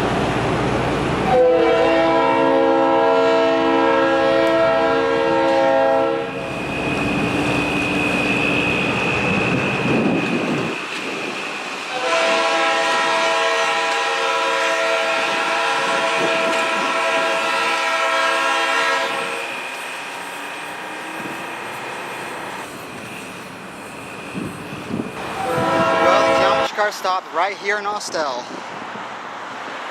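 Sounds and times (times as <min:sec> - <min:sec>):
train rumbling over rails: 0:00.0 - 0:29.9
locomotive air horn chord: 0:01.3 - 0:06.6, 0:11.9 - 0:19.5, 0:25.2 - 0:26.8.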